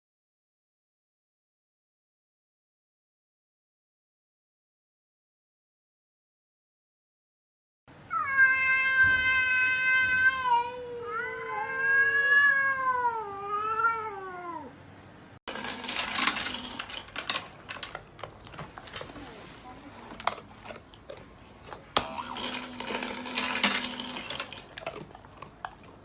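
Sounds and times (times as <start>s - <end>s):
cat yowling: 8.1s - 14.8s
clicks and rustling: 15.5s - 25.9s.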